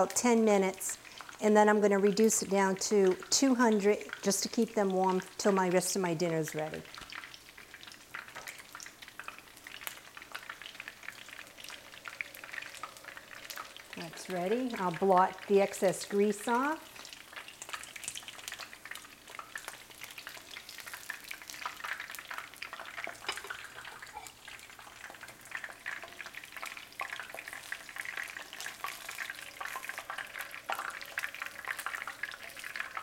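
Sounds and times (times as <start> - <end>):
oil crackling in deep-frying: 0.0 - 33.0.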